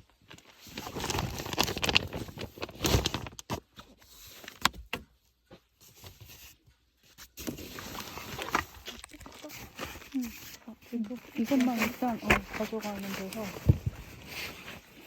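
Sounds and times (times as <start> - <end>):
rustling: 5.6 - 15.0.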